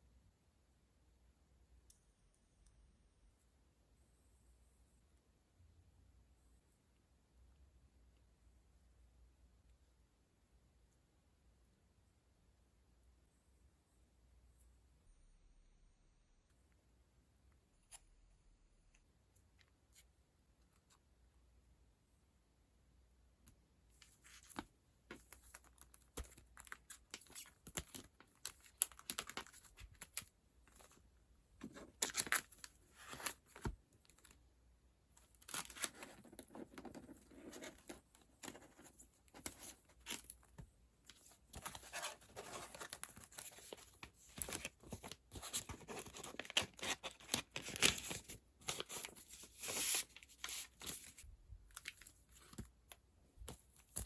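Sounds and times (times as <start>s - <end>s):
packaging rustling and tearing: 41.5s - 51.2s.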